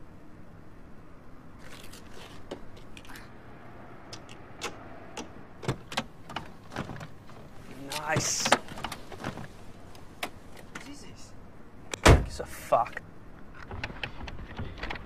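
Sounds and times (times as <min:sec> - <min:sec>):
sharp clicks and knocks: 0:04.1 - 0:09.5.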